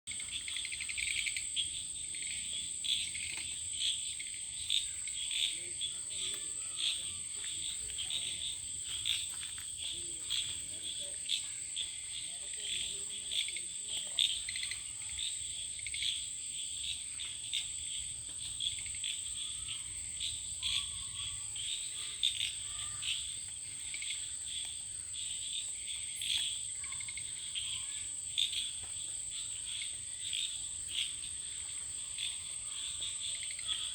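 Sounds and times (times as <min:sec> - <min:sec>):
cricket chirps: 0:00.1 - 0:33.9
crickets trilling: 0:00.1 - 0:33.9.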